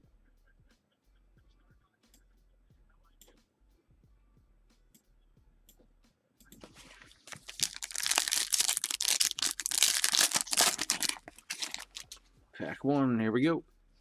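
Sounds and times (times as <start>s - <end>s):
wrapper torn and crinkled: 7.2s - 12.2s.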